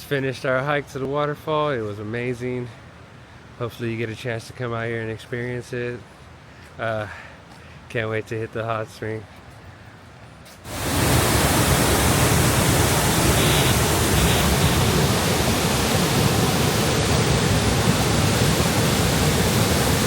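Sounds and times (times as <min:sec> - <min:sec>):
waterfall rushing: 0:10.7 - 0:20.0.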